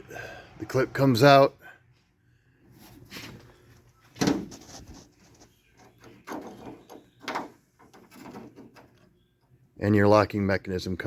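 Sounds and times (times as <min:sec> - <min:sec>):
door lock clunks and rattles: 0:04.2 - 0:04.6, 0:06.0 - 0:09.1.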